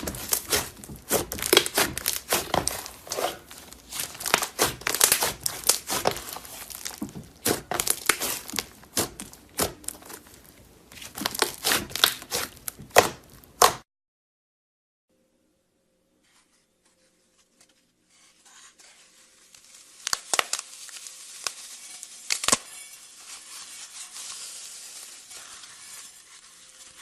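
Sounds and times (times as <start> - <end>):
slime squeezed by hand: 0.0 - 13.8.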